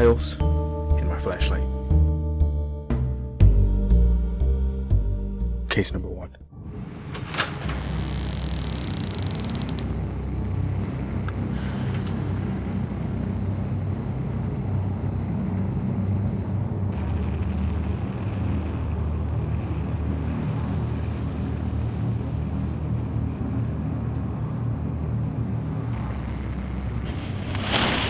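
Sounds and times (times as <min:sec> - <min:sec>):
low rumble: 0:06.4 - 0:28.0
cricket chirping: 0:06.8 - 0:28.0.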